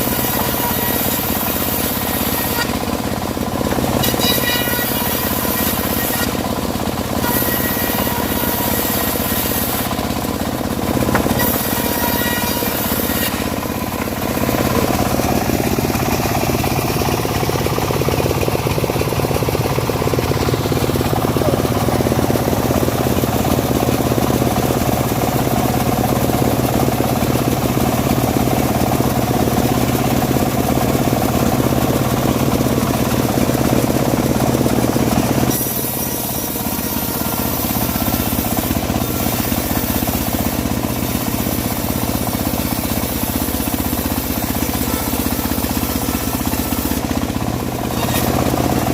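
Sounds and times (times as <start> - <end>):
bandsaw mill sawing log: 0.0 - 48.9.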